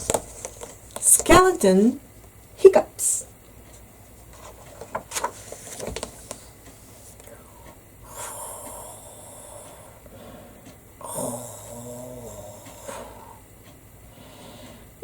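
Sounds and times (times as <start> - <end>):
soft taps and rustles: 0.0 - 1.4, 3.6 - 7.3
person imitating snoring: 8.1 - 10.0, 11.0 - 13.4.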